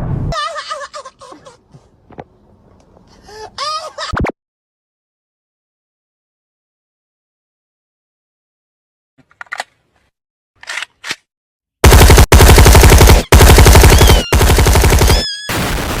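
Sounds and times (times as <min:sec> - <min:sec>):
rapid-fire gunshot bursts: 0:11.8 - 0:16.0.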